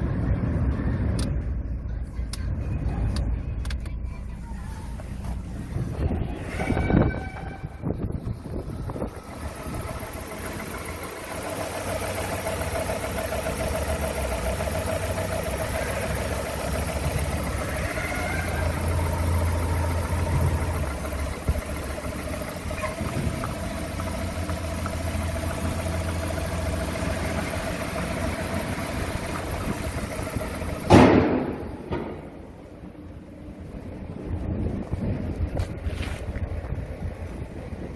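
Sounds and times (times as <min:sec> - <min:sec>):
car engine idling: 0:00.0 - 0:37.9
engine knocking: 0:05.4 - 0:32.5.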